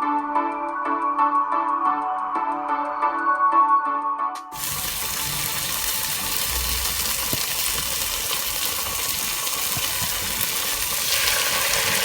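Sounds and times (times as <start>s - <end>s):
vegetables sizzling in hot oil: 4.6s - 12.0s.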